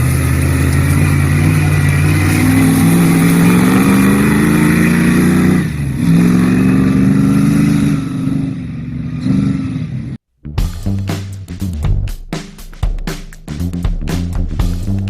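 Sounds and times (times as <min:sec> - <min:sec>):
buggy engine accelerating hard: 0:00.0 - 0:10.2.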